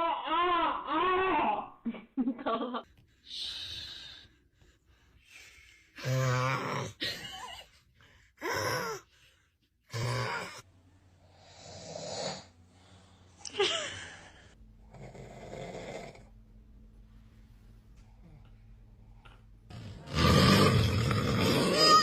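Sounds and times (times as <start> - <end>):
man snoring heavily: 11.3 - 12.5, 14.8 - 16.3, 19.7 - 22.0
wheezing groaning breaths: 14.0 - 16.4.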